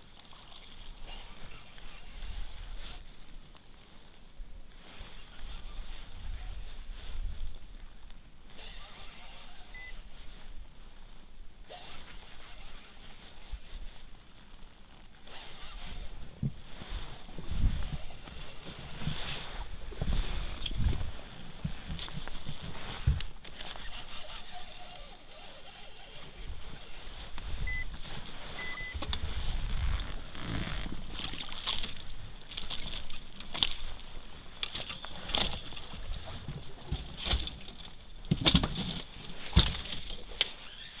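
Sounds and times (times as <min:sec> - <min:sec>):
water sloshing against boat: 0:26.5 - 0:41.0.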